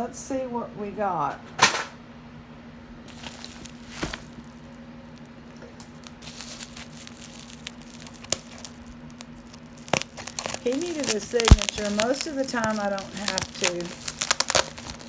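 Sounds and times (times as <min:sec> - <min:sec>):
steady low hum: 0:00.0 - 0:15.0
package rustling: 0:03.1 - 0:15.0.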